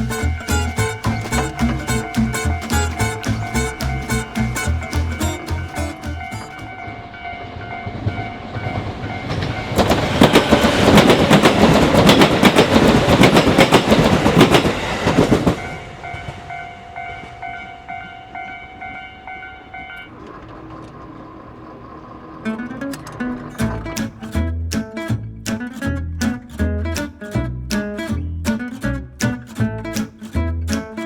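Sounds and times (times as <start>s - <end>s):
level-crossing warning bell: 0.0s - 22.8s
train wheels clattering over rail joints: 7.9s - 16.5s.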